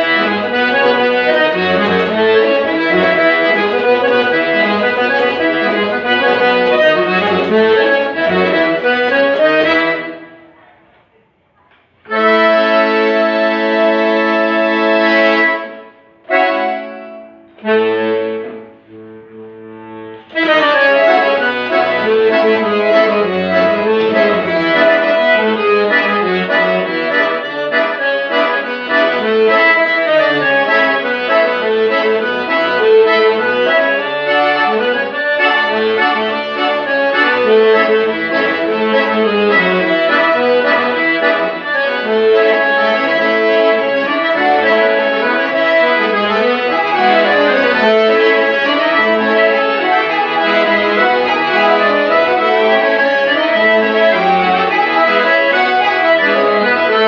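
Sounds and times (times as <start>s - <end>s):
accordion playing chords: 0.0s - 10.8s, 12.1s - 57.0s.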